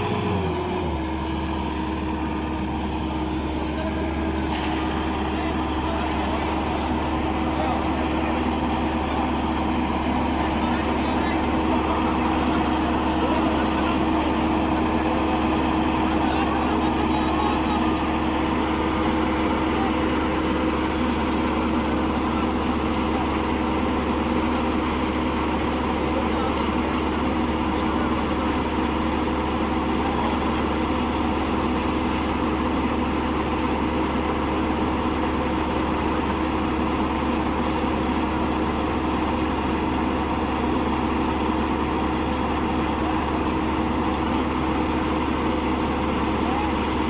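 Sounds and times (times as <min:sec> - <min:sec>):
small engine droning: 0:00.0 - 0:47.0.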